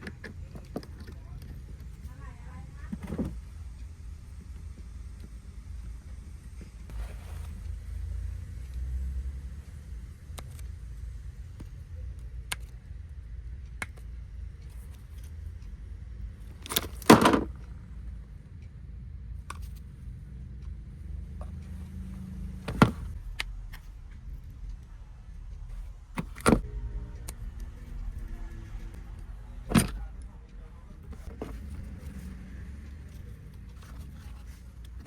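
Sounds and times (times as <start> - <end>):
low steady rumble: 0.0 - 35.0
hard objects clicking and knocking: 16.5 - 17.7.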